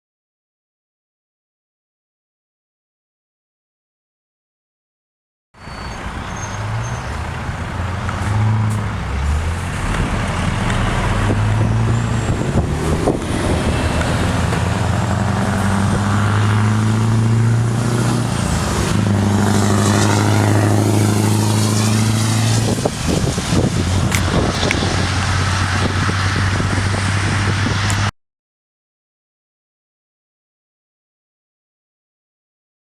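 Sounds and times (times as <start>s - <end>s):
truck engine driving by: 5.6s - 28.1s
exhaust crackles and pops: 6.6s - 17.0s, 18.8s - 28.1s.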